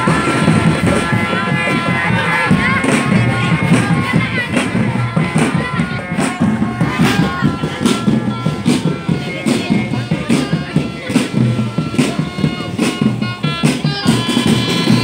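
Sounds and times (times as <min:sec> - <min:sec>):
drum band marching beat: 0:00.0 - 0:15.0
sharp percussion strokes: 0:00.0 - 0:15.0.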